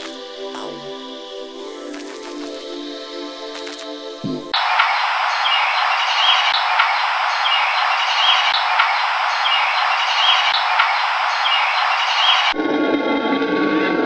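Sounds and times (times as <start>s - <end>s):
steady hiss: 0.0s - 4.0s.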